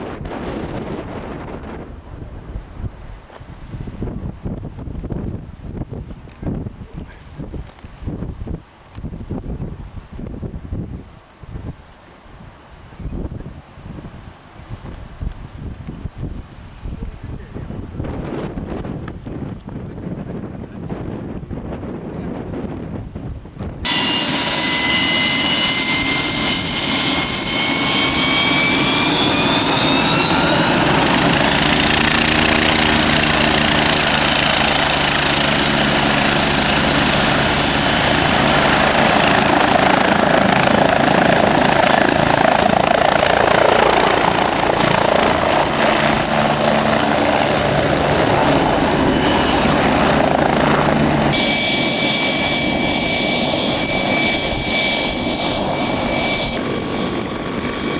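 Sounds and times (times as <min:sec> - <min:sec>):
helicopter engine and rotor noise: 0:23.8 - 0:57.9
high turbine whine: 0:23.8 - 0:57.9.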